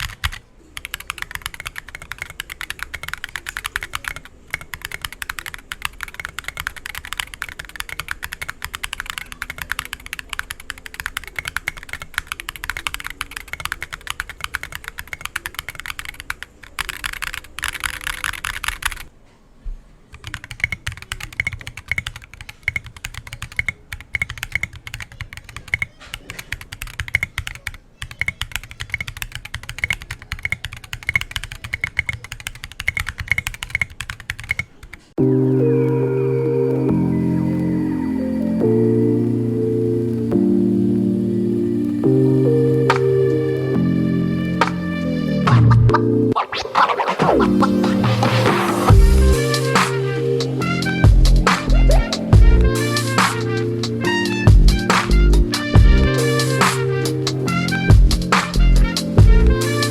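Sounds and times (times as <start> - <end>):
mechanical keyboard typing: 0.0 - 19.1, 20.1 - 36.1, 47.2 - 59.9.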